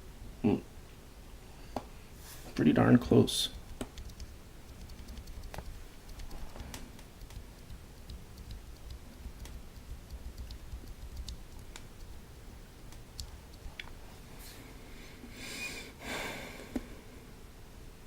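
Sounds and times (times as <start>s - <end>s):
low background rumble: 2.8s - 14.3s.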